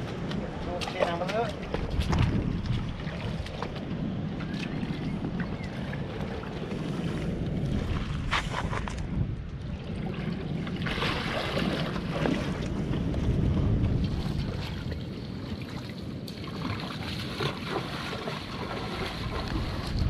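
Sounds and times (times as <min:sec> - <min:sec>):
rush of water: 0:00.0 - 0:08.8, 0:09.6 - 0:20.0
wind on microphone: 0:00.0 - 0:20.0.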